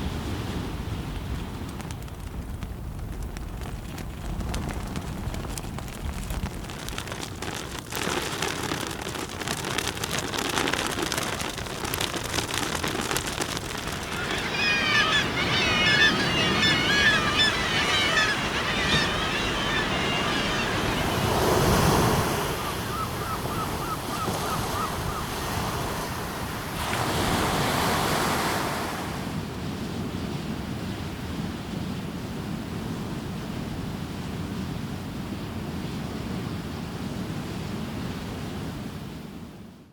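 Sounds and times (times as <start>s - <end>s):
wind: 0.0s - 39.9s
ocean surf: 3.9s - 29.7s
high twittering bird calls: 14.0s - 21.8s.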